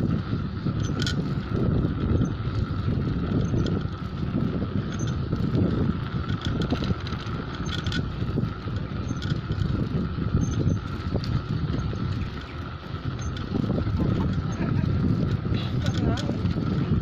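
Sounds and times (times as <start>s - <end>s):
rolling noise: 0.0s - 17.0s
wind buffeting microphone: 0.0s - 17.0s.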